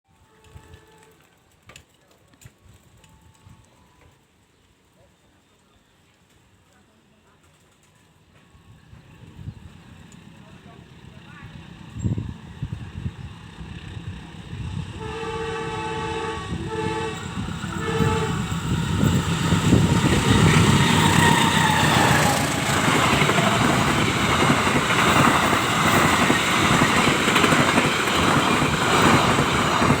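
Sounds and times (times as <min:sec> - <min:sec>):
locomotive horn blasts: 0:00.1 - 0:01.2, 0:15.0 - 0:18.8
locomotive engine roaring: 0:15.6 - 0:30.0.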